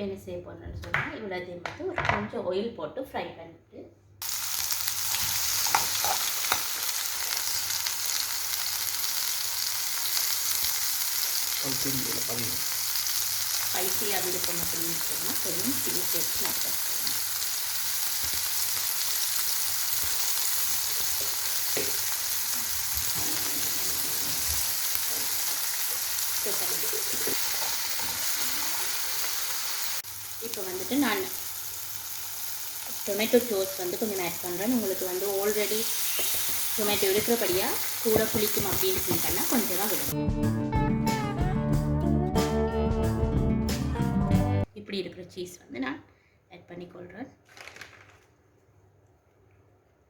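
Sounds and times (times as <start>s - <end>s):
vegetables sizzling in oil: 4.2s - 40.2s
stirring in pan: 15.8s - 30.0s, 34.9s - 40.2s.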